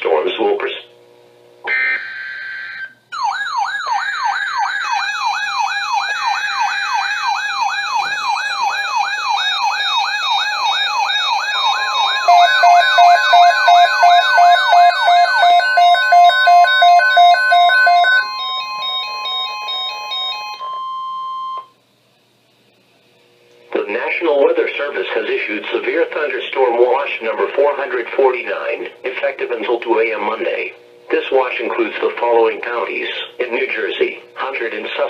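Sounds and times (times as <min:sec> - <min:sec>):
fast wailing siren: 0:01.7 - 0:20.9
high-low two-tone siren: 0:01.7 - 0:21.7
steady single-pitch alarm tone: 0:01.7 - 0:21.8.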